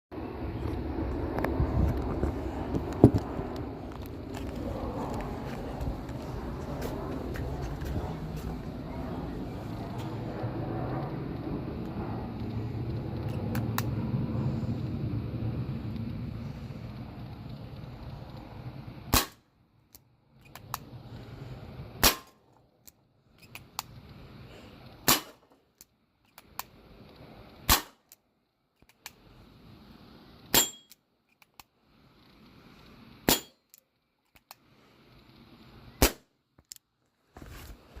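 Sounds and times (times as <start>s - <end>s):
air pistol shots: 19.1s - 19.4s, 22.0s - 22.4s, 25.1s - 25.4s, 27.7s - 28.0s, 36.0s - 36.3s.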